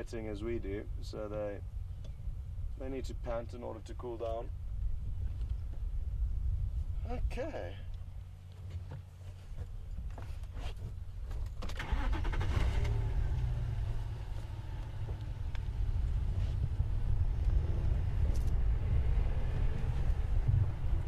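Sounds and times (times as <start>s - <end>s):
vehicle engine starting and running: 11.6s - 21.0s.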